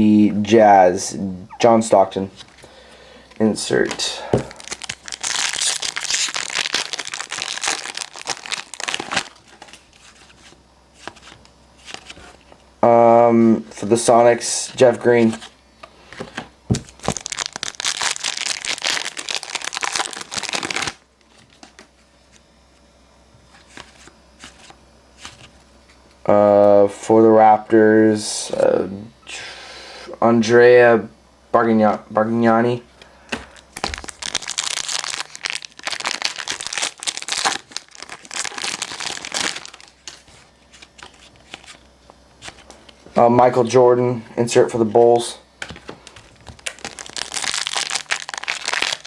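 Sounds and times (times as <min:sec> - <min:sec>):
wrapper crinkling and rustling: 0:03.8 - 0:12.4, 0:16.3 - 0:21.9, 0:33.4 - 0:41.8, 0:45.1 - 0:49.0.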